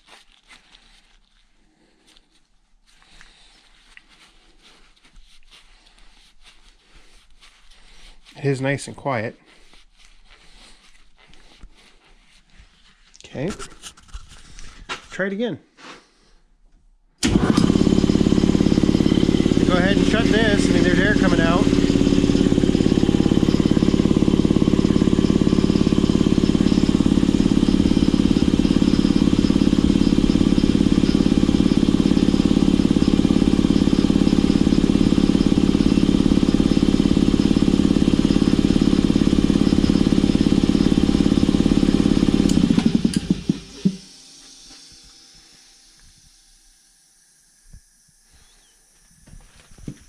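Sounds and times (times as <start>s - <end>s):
piston air compressor running: 17.2s - 50.0s.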